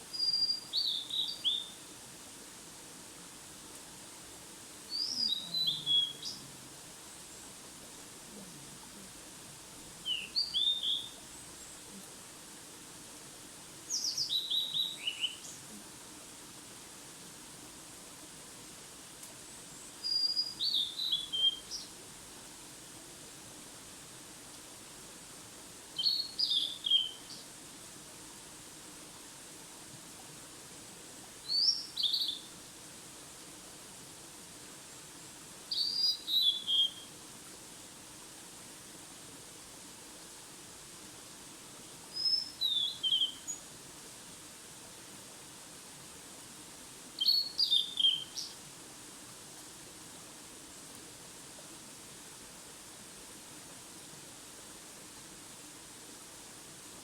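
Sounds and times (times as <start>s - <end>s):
background hiss: 0.0s - 57.0s
songbird chirping: 4.9s - 6.5s, 10.0s - 12.1s, 13.9s - 15.7s, 35.7s - 37.1s, 42.1s - 43.7s, 47.2s - 48.6s.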